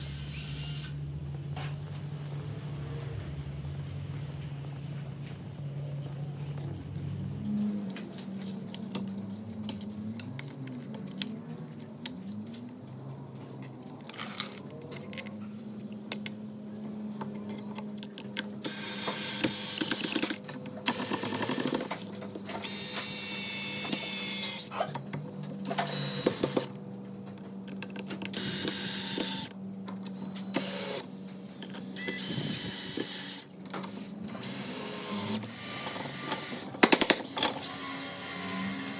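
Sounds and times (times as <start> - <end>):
power drill whining: 0.0 - 1.0, 18.6 - 21.9, 22.6 - 24.7, 25.7 - 26.7, 28.4 - 29.5, 30.4 - 38.9.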